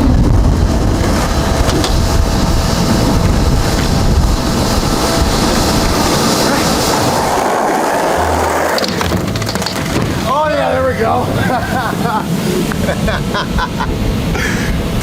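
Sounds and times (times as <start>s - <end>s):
wheels rolling over hard surface: 0.0s - 12.9s.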